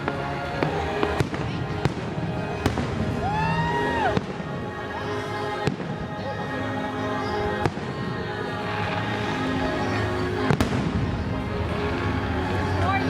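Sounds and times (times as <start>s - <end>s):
music soundtrack: 0.0s - 13.0s
firework bangs: 10.4s - 11.3s.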